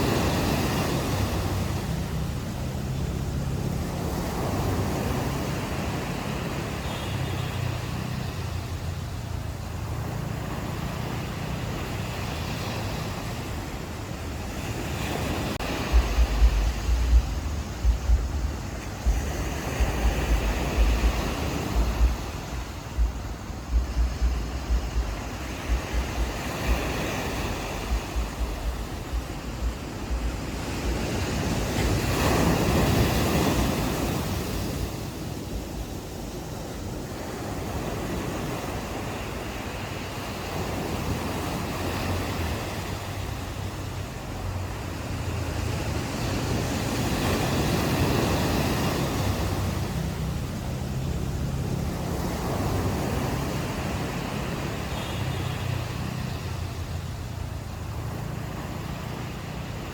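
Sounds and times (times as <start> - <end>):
ocean waves breaking on beach: 0.0 - 59.9
wind buffeting microphone: 12.7 - 59.9
low steady hum: 15.9 - 26.4.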